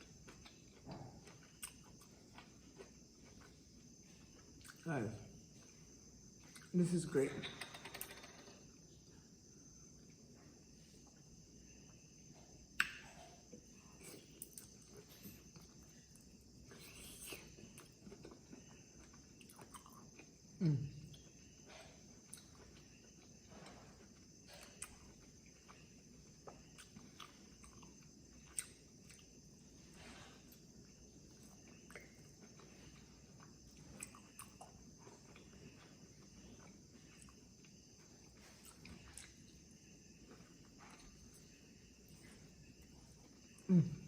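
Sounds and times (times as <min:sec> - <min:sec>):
chewing clicks and mouth smacks: 0:00.1 - 0:04.8, 0:05.6 - 0:06.8, 0:12.7 - 0:29.5, 0:30.6 - 0:42.5.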